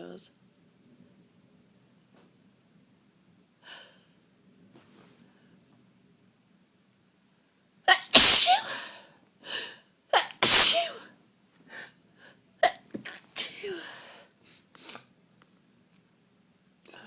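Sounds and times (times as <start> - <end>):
woman sneezing: 7.9 - 8.7, 10.2 - 11.0.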